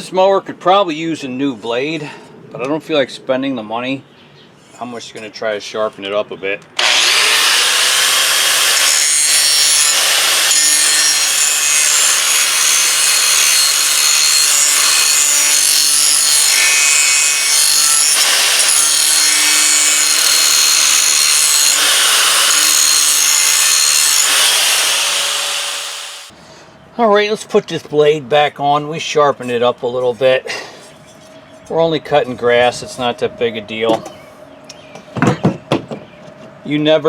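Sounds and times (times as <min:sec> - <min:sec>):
grinder grinding metal blade: 0:06.8 - 0:26.3.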